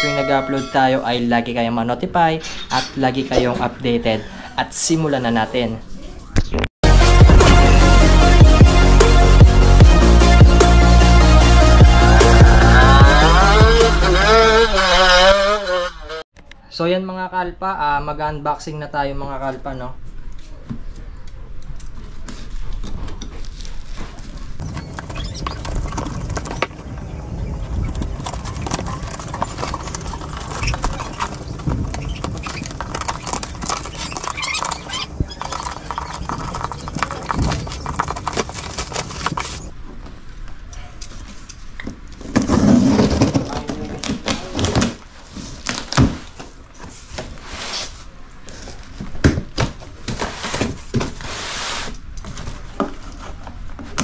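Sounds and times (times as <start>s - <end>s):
knocks and rustles: 22.3s - 39.7s
cardboard box being opened: 28.2s - 39.7s
plastic wrap crackling and tearing: 28.6s - 39.7s.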